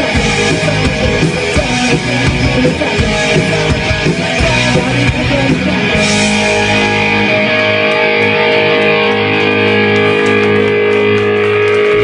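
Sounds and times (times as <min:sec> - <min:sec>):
live rock band: 0:00.0 - 0:12.0
electric guitar sustained chord: 0:05.8 - 0:12.0.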